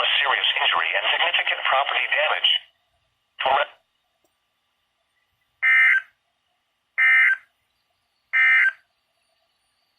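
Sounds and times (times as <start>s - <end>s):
screechy digital data tones: 8.3s - 8.8s.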